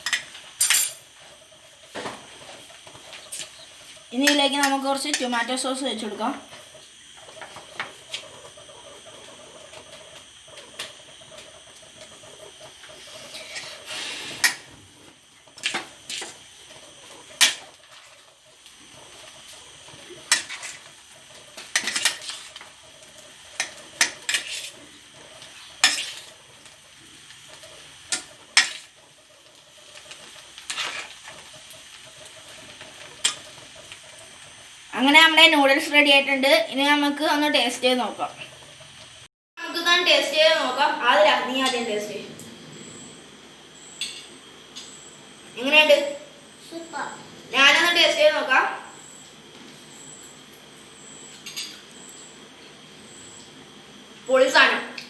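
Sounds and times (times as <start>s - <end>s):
spatula scraping a pan: 6.4s - 34.5s.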